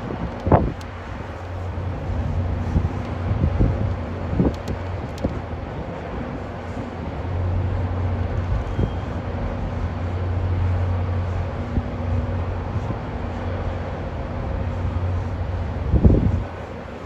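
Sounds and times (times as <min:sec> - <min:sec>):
large engine humming: 0:00.0 - 0:17.0.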